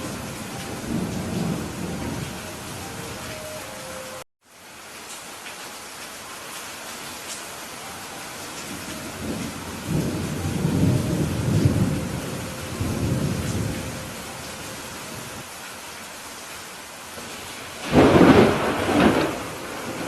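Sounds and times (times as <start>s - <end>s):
thunder rumbling: 0.0s - 3.4s, 8.6s - 15.4s, 17.2s - 20.0s
steady rain falling: 0.0s - 20.0s.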